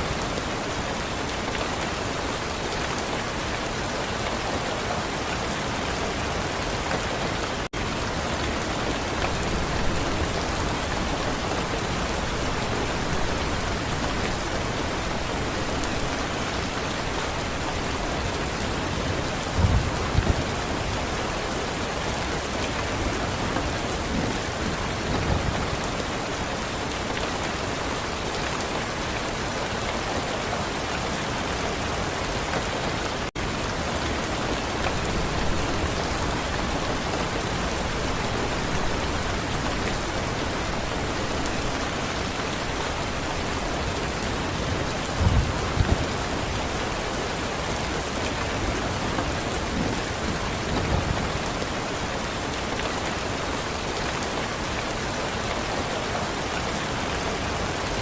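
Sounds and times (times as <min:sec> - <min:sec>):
heavy rain: 0:00.0 - 0:58.0
low thunder rumbling: 0:19.0 - 0:21.0, 0:43.0 - 0:46.6.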